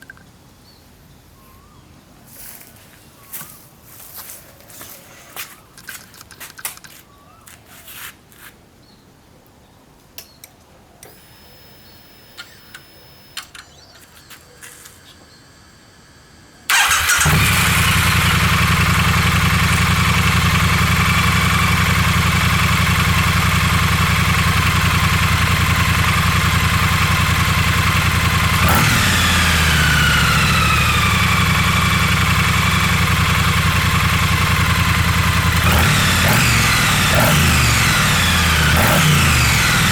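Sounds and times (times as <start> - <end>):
motorcycle engine starting and idling: 11.0 - 14.4, 16.7 - 39.9.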